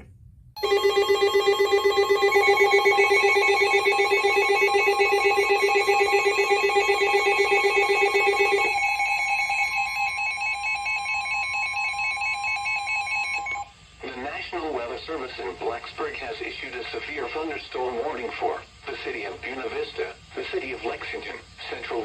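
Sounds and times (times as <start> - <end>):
warbling alert alarm tone: 0.6 - 13.7.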